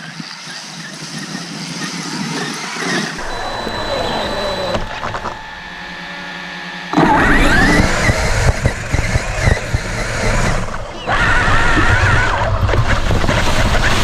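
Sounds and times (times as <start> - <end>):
rc truck motor whine: 0.0 - 14.0
rumble and rattle from terrain: 6.9 - 14.0.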